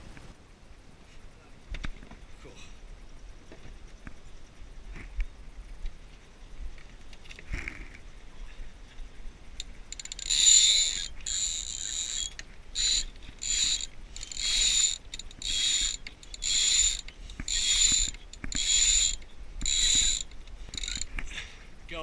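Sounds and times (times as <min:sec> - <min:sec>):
rope squealing through rigging: 0:09.9 - 0:21.1.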